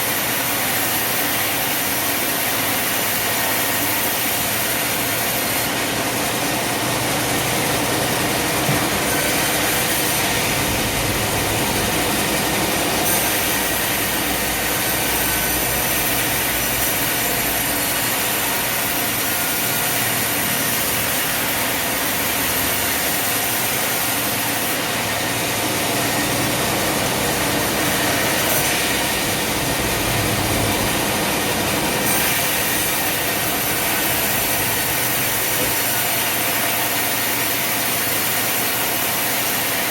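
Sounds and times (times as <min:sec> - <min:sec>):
saw cutting wood: 0:00.0 - 0:39.9
engine drone: 0:05.9 - 0:19.4, 0:24.9 - 0:35.8.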